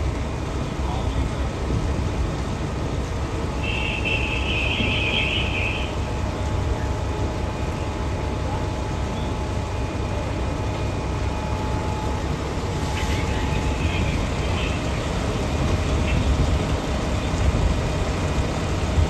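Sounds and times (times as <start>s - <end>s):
vehicle engines running: 0.0s - 19.0s
wind rumble: 10.6s - 19.0s.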